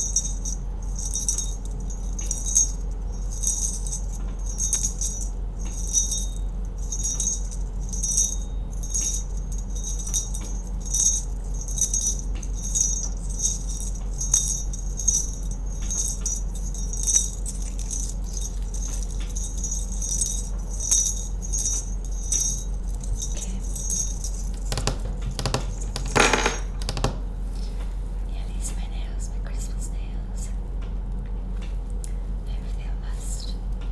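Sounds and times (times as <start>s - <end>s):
handling rustle: 0.0s - 26.7s
jingle bells shaken: 0.0s - 26.8s
steady low hum: 0.0s - 33.9s.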